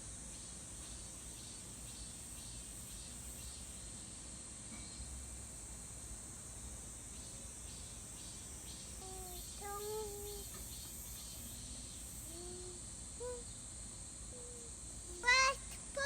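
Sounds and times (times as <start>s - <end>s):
insects chirring: 0.0s - 16.0s.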